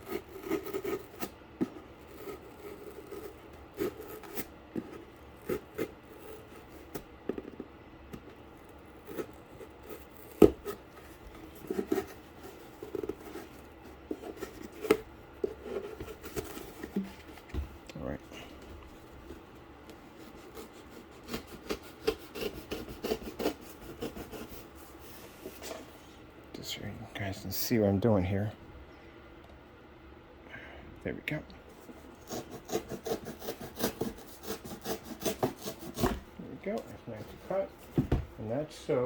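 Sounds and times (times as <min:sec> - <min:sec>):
cardboard being cut: 0:00.0 - 0:07.6, 0:08.6 - 0:17.1, 0:20.2 - 0:24.7, 0:32.1 - 0:36.2.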